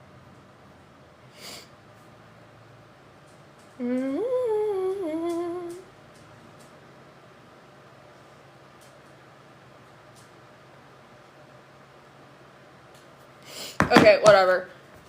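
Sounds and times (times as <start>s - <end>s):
woman humming: 3.7s - 5.9s.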